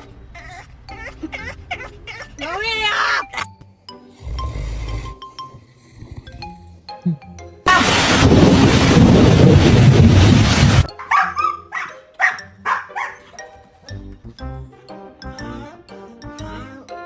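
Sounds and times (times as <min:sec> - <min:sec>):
background music: 0:00.0 - 0:08.5, 0:10.8 - 0:17.0
loud rushing noise: 0:07.7 - 0:10.9
dog barking: 0:10.9 - 0:14.0.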